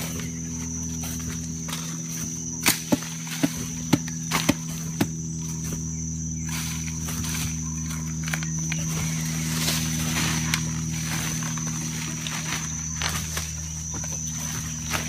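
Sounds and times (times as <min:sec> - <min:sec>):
high insect whine: 0:00.0 - 0:15.0
low steady hum: 0:00.0 - 0:15.0.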